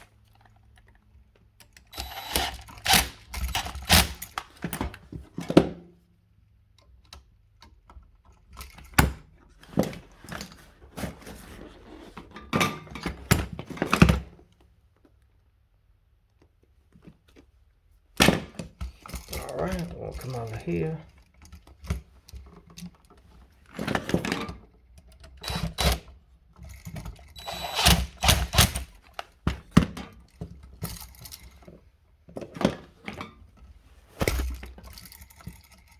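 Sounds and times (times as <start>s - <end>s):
hand tools and wire clicking: 1.6s - 4.9s, 25.0s - 29.4s.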